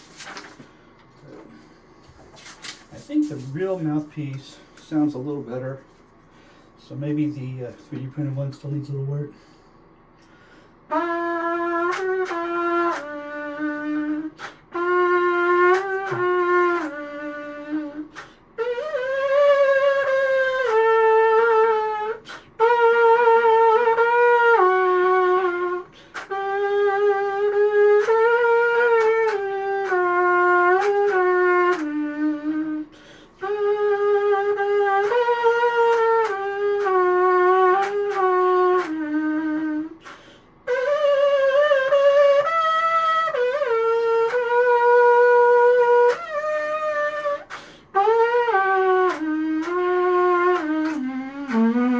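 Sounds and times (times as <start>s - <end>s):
trumpet playing slow melody: 10.9s - 40.0s, 40.6s - 51.9s.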